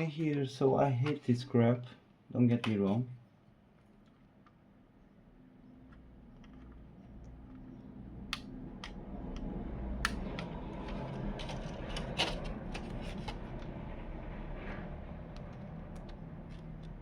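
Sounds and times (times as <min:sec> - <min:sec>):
plastic parts scraping: 0:10.3 - 0:14.0
rustle of handling: 0:10.6 - 0:17.0.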